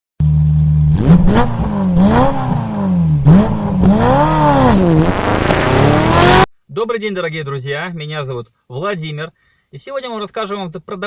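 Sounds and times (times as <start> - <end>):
car engine revving: 0.2 - 6.5.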